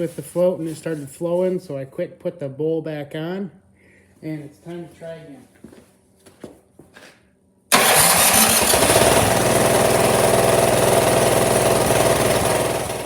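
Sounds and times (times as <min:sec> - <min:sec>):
snowblower engine running: 0:07.7 - 0:13.0.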